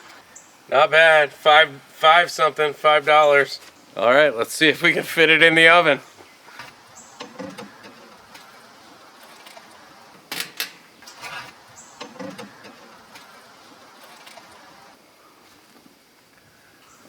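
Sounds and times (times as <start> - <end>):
stove burner hissing: 0.0 - 16.0
rustling and light clatter: 6.1 - 16.4.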